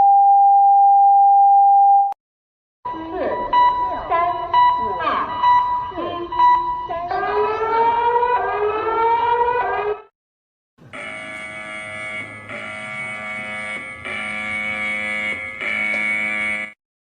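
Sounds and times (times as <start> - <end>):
harsh multi-tone alarm: 2.9 - 8.5, 10.8 - 16.8
rising siren-like sweep: 10.9 - 16.7.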